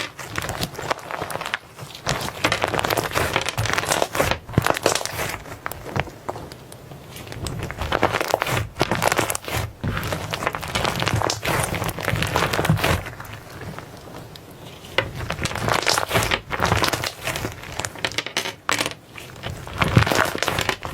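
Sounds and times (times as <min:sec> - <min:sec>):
slime squeezed crackling and popping: 0:00.0 - 0:13.7, 0:15.0 - 0:18.1, 0:19.2 - 0:20.9.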